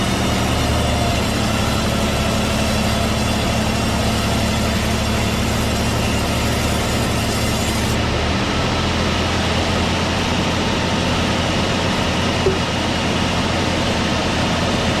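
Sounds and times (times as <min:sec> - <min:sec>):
constant whirring: 0:00.0 - 0:15.0
sawmill machinery hum: 0:00.0 - 0:15.0.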